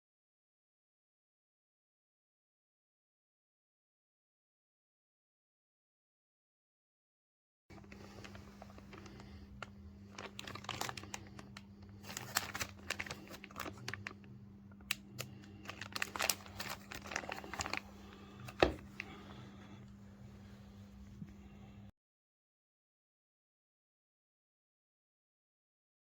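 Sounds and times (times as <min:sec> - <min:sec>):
rustling handling noises: 0:07.7 - 0:21.6
low electrical hum: 0:07.7 - 0:21.9.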